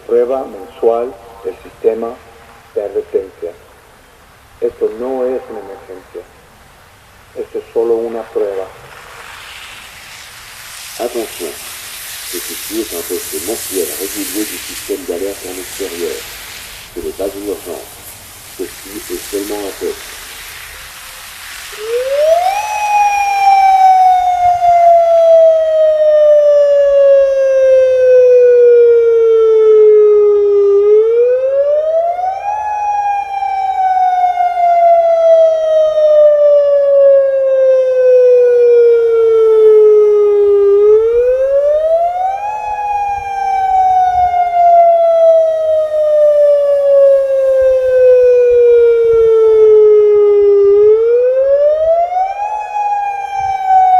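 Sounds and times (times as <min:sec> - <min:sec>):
faint siren echo: 0:07.4 - 0:16.4, 0:18.6 - 0:53.9
brief hiss: 0:08.7 - 0:22.0
warning siren rising and falling: 0:21.7 - 0:53.9.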